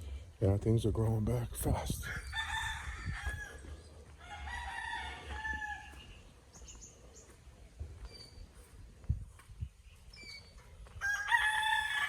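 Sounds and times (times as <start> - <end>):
rooster crowing: 2.0 - 6.1, 11.0 - 12.0.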